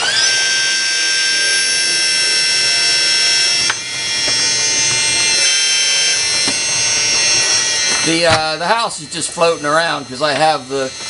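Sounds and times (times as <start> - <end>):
hydraulic pump whining: 0.0 - 11.0.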